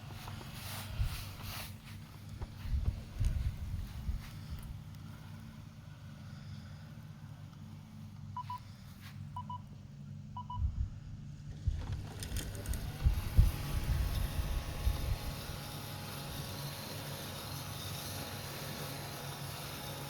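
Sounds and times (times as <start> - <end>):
low hum: 0.0 - 15.7
mower uneven rumbling with hiss: 0.0 - 20.0.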